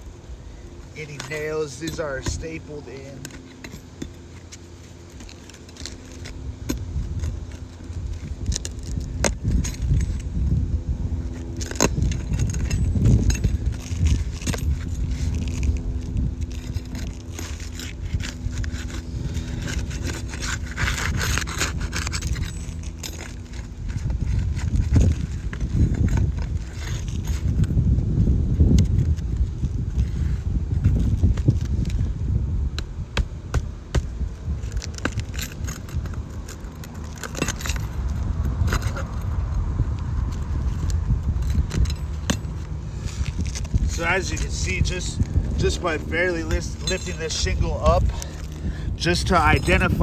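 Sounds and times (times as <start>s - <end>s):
steady low hum: 0.0s - 50.0s
wind rumble on microphone: 0.0s - 50.0s
roof shingles scraping and crackling: 0.9s - 10.2s, 11.3s - 27.6s, 41.8s - 50.0s.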